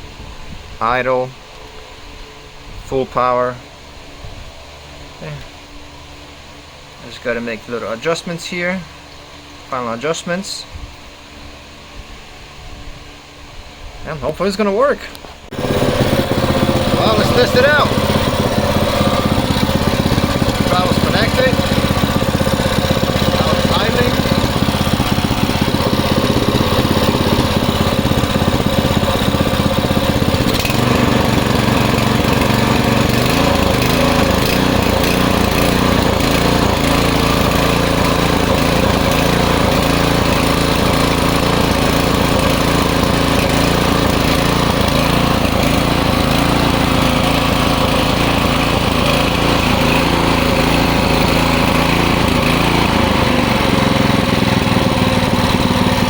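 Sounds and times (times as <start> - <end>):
small gas engine running: 15.5 - 56.0.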